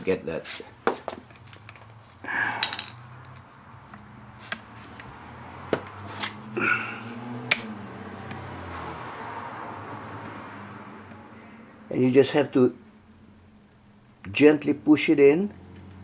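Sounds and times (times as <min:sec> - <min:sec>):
metal tools clinking: 0:01.3 - 0:03.0.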